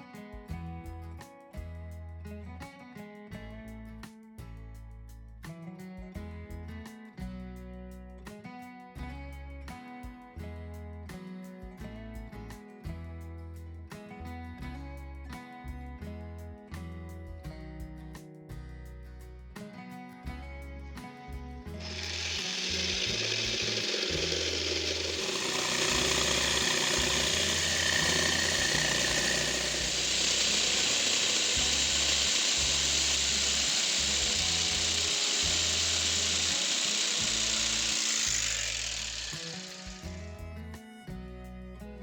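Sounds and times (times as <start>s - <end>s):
power tool running: 21.8s - 40.4s.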